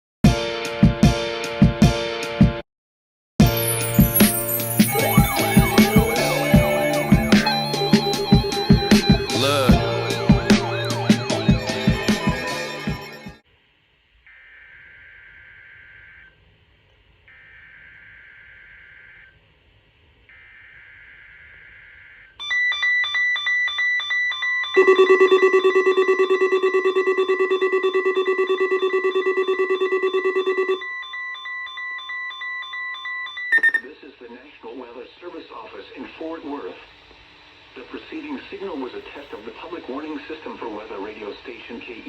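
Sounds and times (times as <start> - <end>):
digital data bursts: 3.4 - 13.4, 23.1 - 30.8
pulsing alert beeps: 3.5 - 13.4, 24.8 - 31.8
steady warning alarm tone: 3.6 - 13.4, 20.3 - 33.9
loud buzzing alarm: 3.8 - 13.4, 14.3 - 16.4, 17.3 - 19.4, 20.3 - 33.8.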